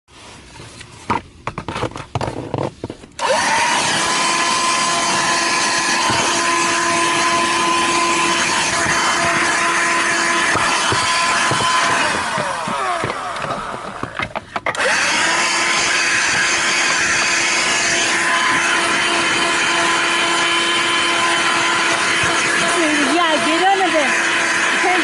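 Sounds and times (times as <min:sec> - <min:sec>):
vacuum cleaner motor whining: 0:03.2 - 0:25.0
handling knocks and clicks: 0:10.3 - 0:14.8.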